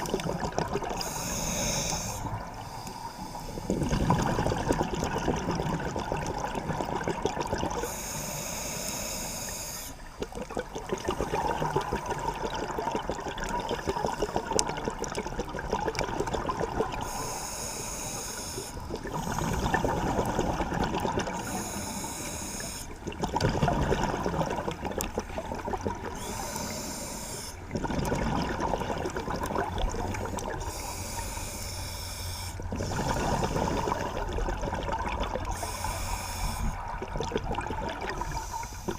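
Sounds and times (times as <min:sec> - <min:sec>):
diver breathing through regulator: 0:00.9 - 0:04.3, 0:07.8 - 0:10.4, 0:17.0 - 0:20.6, 0:21.2 - 0:23.0, 0:26.1 - 0:27.7, 0:30.1 - 0:34.4, 0:35.4 - 0:37.0, 0:38.0 - 0:38.9
bubbling exhalations: 0:03.6 - 0:07.9, 0:10.1 - 0:17.1, 0:18.8 - 0:21.6, 0:22.6 - 0:26.8, 0:27.6 - 0:30.8, 0:32.7 - 0:35.9, 0:36.6 - 0:38.9.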